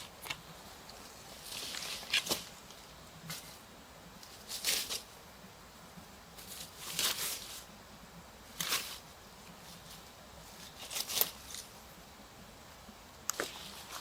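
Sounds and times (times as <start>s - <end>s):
rustling and crunching: 0.0s - 5.2s, 6.3s - 7.8s, 8.4s - 12.0s, 13.3s - 14.0s
faint steady hiss: 0.0s - 14.0s.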